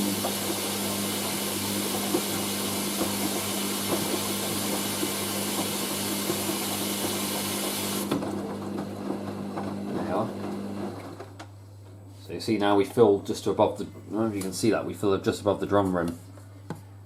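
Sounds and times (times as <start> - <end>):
water rushing into washing machine: 0.0 - 11.3.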